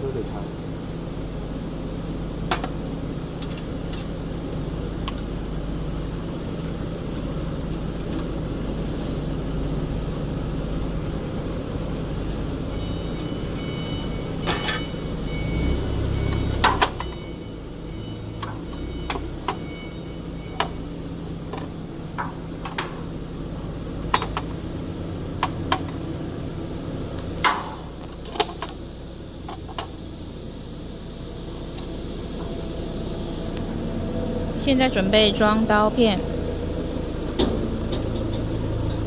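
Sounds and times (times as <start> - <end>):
steady low hum: 0.0 - 39.0
sharp metallic knocks and clicks: 24.1 - 24.6.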